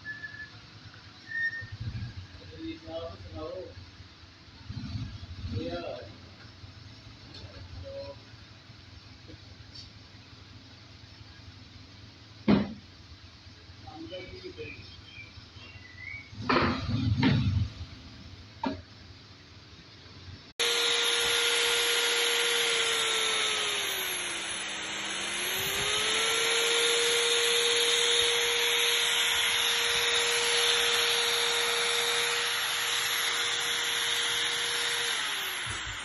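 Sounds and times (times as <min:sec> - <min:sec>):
electric power tool cutting wood: 0:20.6 - 0:36.0.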